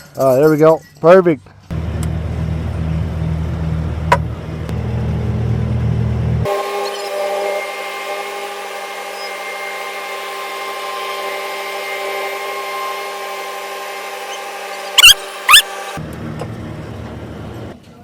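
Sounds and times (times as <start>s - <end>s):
machine motor whining: 6.4s - 17.7s.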